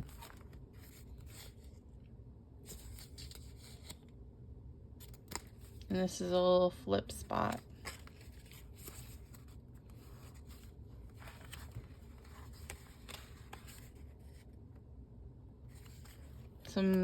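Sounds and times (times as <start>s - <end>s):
paper pages rustling and tapping: 0.0s - 1.7s, 2.7s - 4.1s, 7.2s - 14.5s, 15.7s - 17.0s.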